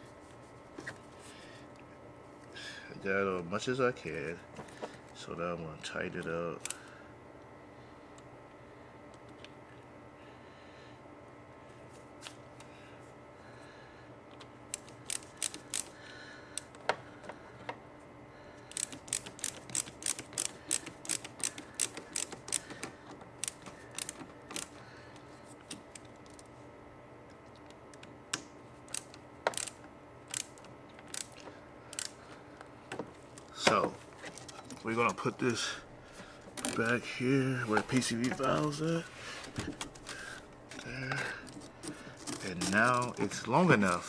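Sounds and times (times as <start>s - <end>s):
ratchet clicking: 14.7s - 16.0s, 18.7s - 24.8s, 28.9s - 32.2s.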